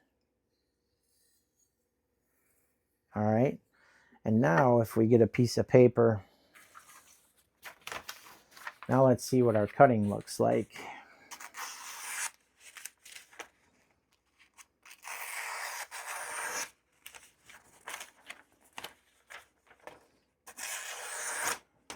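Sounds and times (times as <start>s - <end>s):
paper rustling: 6.6s - 10.6s, 11.3s - 21.6s
knife slicing through paper: 11.3s - 13.5s, 14.4s - 19.4s, 20.5s - 21.6s.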